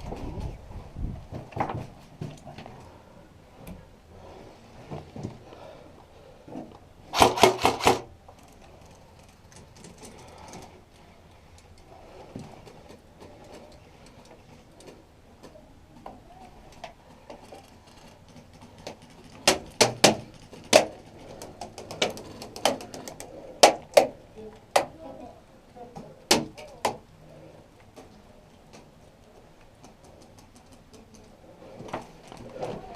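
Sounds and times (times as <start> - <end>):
airsoft gun shots: 7.1 - 8.1.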